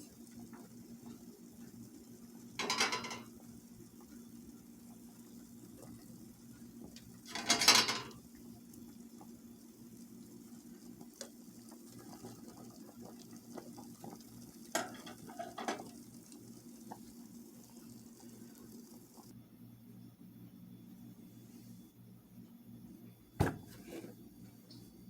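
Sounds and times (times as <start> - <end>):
dishes knocking and clinking: 2.6 - 3.3, 23.4 - 23.8.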